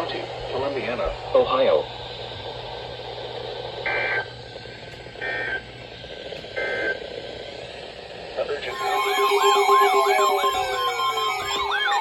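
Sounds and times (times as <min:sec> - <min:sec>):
digital data tone bursts: 0:08.7 - 0:12.0.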